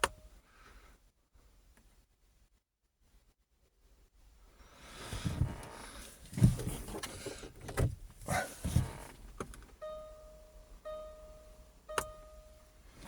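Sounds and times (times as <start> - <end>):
electronic warning chime: 9.8 - 12.8.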